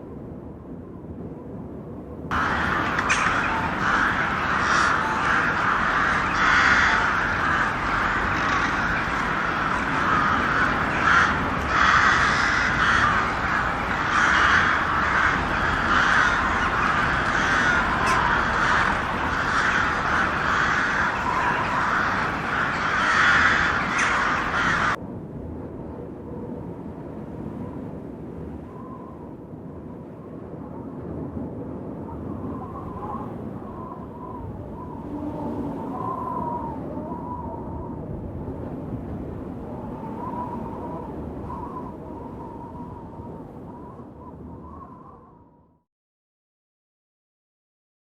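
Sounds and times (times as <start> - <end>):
large flock of birds calling: 2.3 - 25.0.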